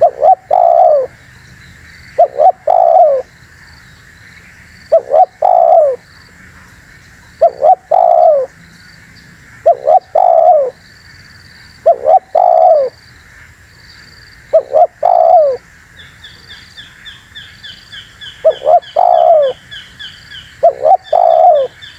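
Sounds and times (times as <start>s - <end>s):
dove cooing: 0.0s - 1.2s, 2.2s - 3.3s, 4.9s - 6.0s, 7.4s - 8.5s, 9.6s - 10.8s, 11.8s - 13.0s, 14.5s - 15.6s, 18.2s - 19.7s, 20.3s - 21.9s.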